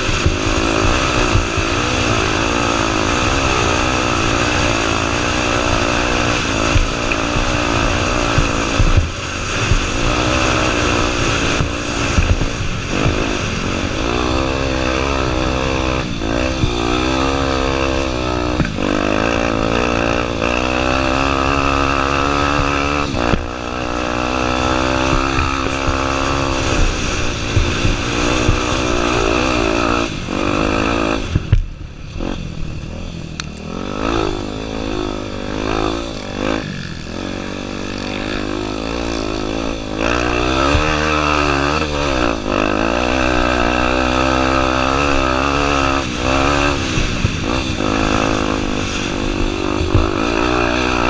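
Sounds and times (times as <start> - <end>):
motorcycle engine revving: 0.0 - 51.0.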